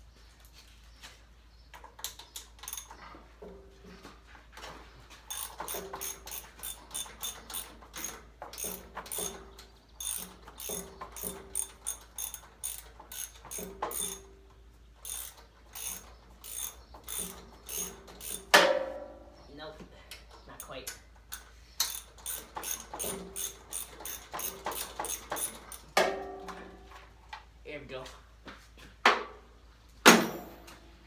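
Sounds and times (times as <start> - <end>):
ratchet wrench clicking: 2.4 - 2.9, 5.3 - 9.4, 10.0 - 14.3, 15.0 - 18.6, 20.6 - 26.0
loud metal clank: 30.1 - 30.8.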